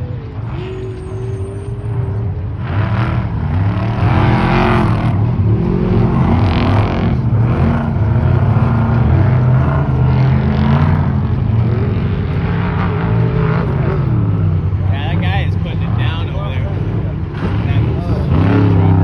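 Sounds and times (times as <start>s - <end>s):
truck engines revving: 0.0s - 19.0s.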